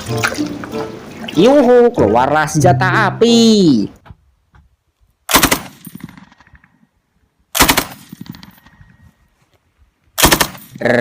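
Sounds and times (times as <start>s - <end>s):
toy machine-gun fire: 5.3s - 5.8s, 7.6s - 8.0s, 10.2s - 10.8s.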